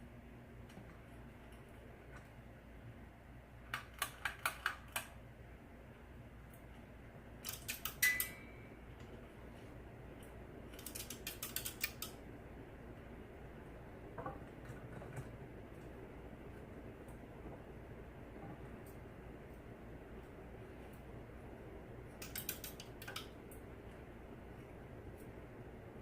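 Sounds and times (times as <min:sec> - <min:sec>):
ceiling fan humming: 0:00.0 - 0:26.0
rapid clicking: 0:10.7 - 0:12.2, 0:22.2 - 0:23.4.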